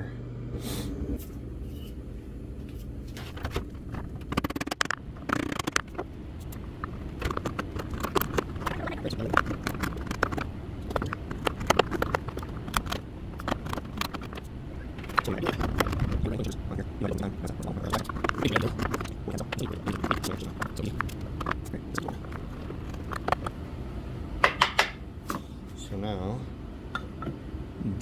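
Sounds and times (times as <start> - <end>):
steady low hum: 0.0 - 28.0
chisel clicking and scraping wood: 4.2 - 16.6, 17.2 - 23.5.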